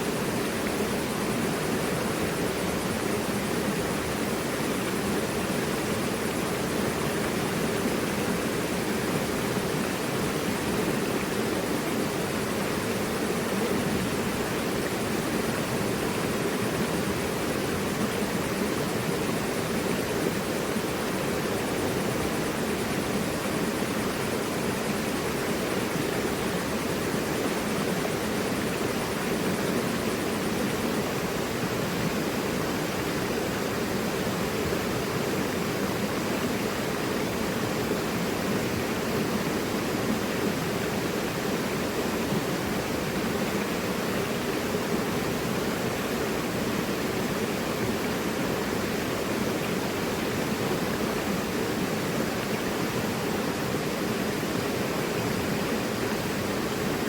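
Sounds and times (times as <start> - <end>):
river rushing over rocks: 0.0 - 57.0.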